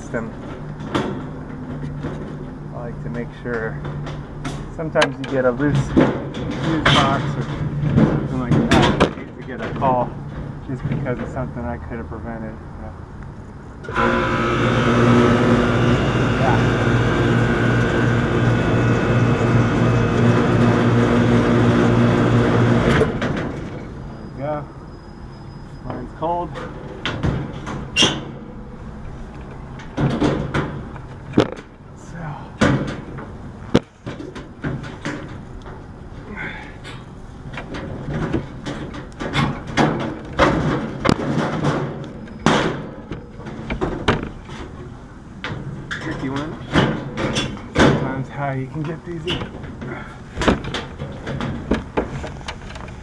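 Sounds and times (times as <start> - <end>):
compressor electrical hum: 0.0 - 24.1
air conditioner fan rushing: 13.8 - 24.2
parts knocking: 48.8 - 53.0.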